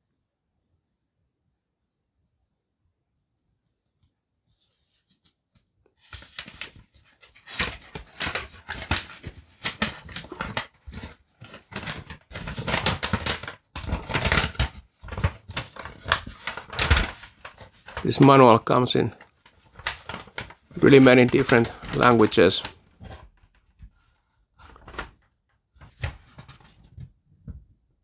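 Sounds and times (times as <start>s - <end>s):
paper pages rustling: 6.0s - 27.1s.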